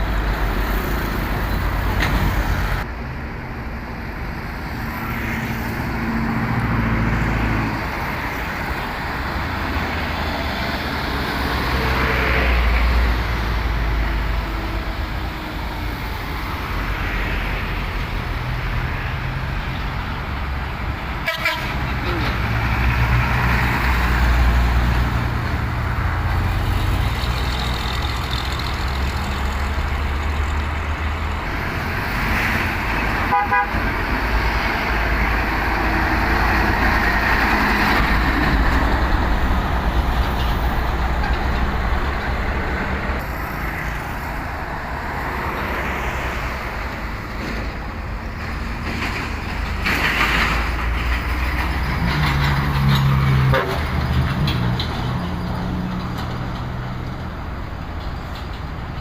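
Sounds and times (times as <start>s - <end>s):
road and traffic noise: 0.0s - 59.0s
truck diesel engine under load: 0.0s - 59.0s.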